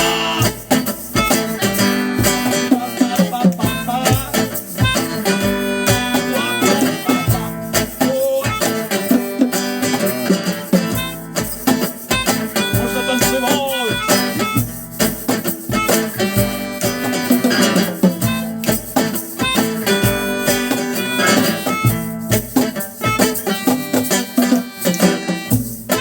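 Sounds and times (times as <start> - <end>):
guitar strumming: 0.0 - 26.0
live band playing instrumental: 0.0 - 26.0.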